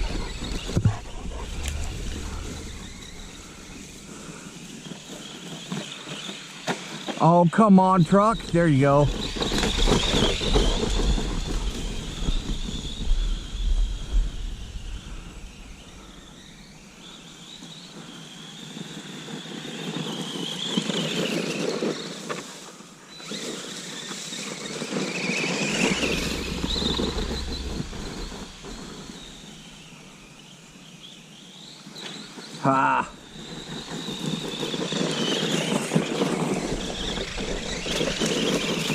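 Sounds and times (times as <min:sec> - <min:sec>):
electric motor whining: 0:00.0 - 0:07.2, 0:23.2 - 0:30.5, 0:33.2 - 0:38.9.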